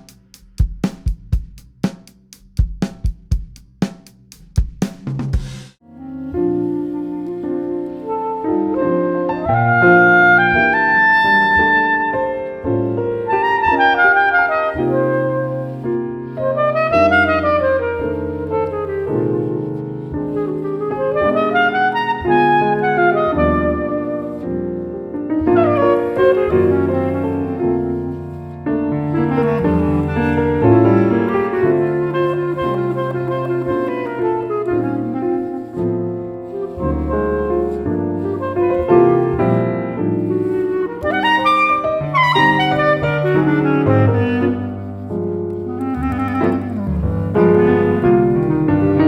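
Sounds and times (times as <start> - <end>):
clarinet melody: 5.8 - 49.0.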